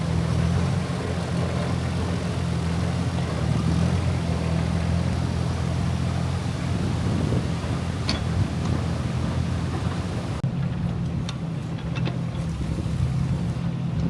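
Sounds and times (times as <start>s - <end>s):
engine running steadily: 0.0s - 14.0s.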